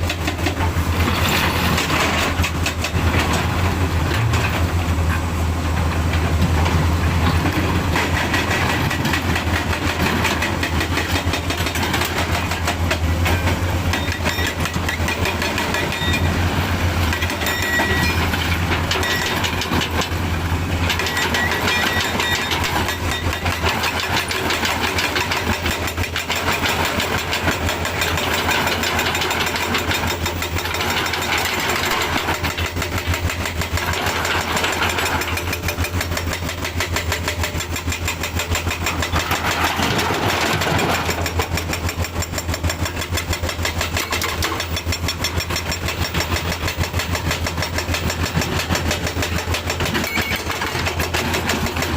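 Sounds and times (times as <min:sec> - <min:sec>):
diesel engine running: 0:00.0 - 0:51.9.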